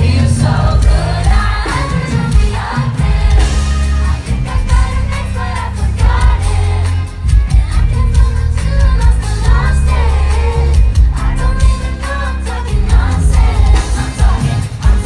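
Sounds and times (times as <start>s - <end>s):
heavy bass line: 0.0s - 15.0s
person singing: 0.0s - 15.0s.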